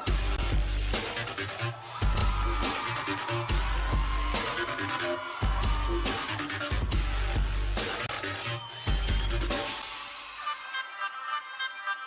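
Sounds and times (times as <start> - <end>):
deep bass: 0.0 - 1.4, 2.0 - 8.2
electronic dance music: 0.0 - 12.0.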